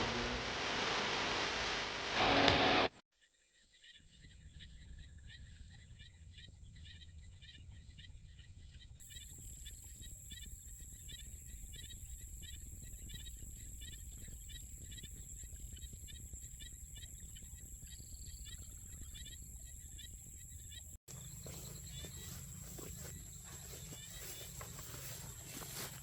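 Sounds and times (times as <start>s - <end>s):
insect chirps: 4.3s - 26.0s
insects trilling: 9.0s - 26.0s.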